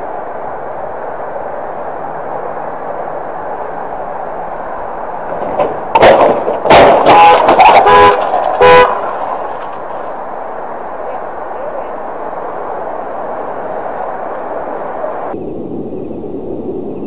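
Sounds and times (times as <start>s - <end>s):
vehicle running noise: 0.0s - 17.0s
loud crashing impacts: 5.1s - 11.1s.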